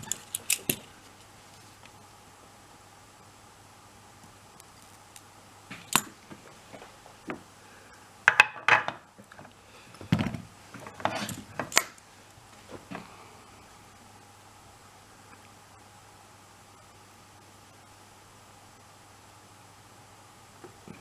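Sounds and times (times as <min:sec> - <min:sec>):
small parts clicking and clattering: 0:00.0 - 0:00.9, 0:04.6 - 0:06.1.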